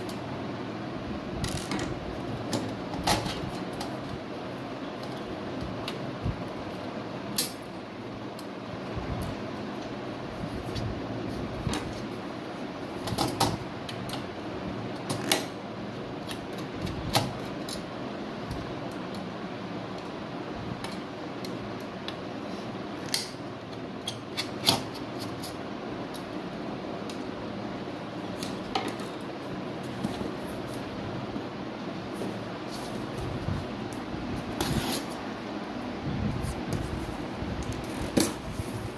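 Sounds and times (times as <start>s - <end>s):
steady background hum: 0.0s - 38.9s.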